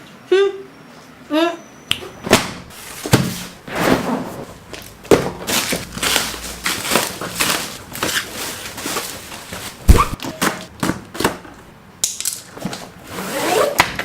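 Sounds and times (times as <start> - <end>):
packaging rustling and crinkling: 2.8 - 10.2.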